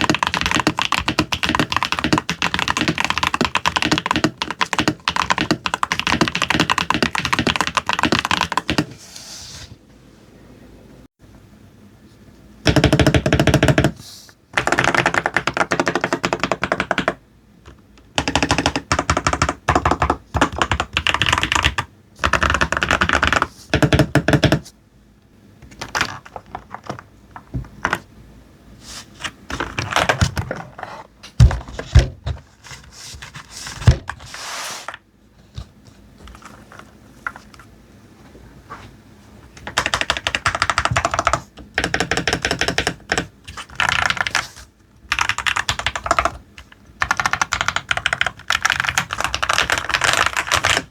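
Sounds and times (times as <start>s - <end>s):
mechanical keyboard typing: 0.0s - 8.9s, 12.7s - 14.0s, 14.6s - 17.2s, 18.2s - 24.6s, 39.6s - 44.5s, 45.1s - 50.9s.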